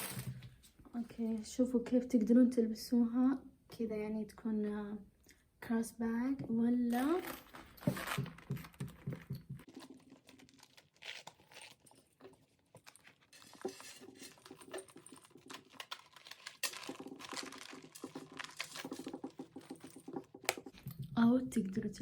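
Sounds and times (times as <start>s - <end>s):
handbag rustling: 6.9s - 21.0s.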